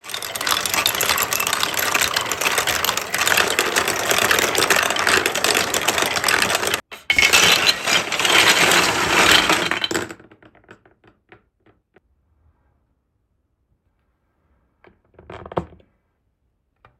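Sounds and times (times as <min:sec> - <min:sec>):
marbles clattering down plastic tracks: 0:00.0 - 0:10.4.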